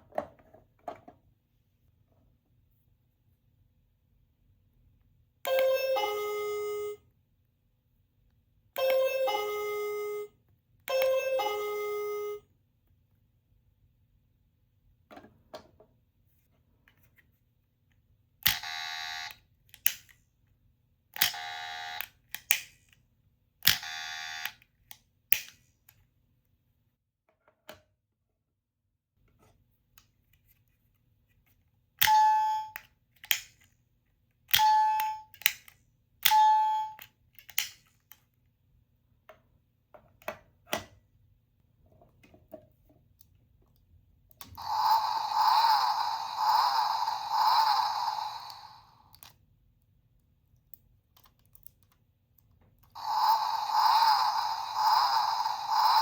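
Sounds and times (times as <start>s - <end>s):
short ringing chime tones: 53.0s - 56.0s.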